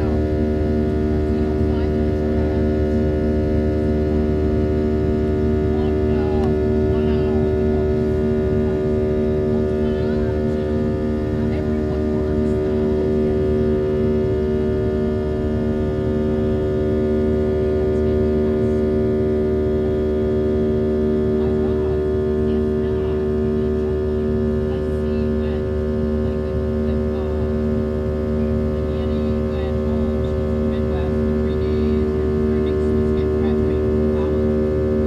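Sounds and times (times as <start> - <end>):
jet airliner cabin drone: 0.0 - 35.0.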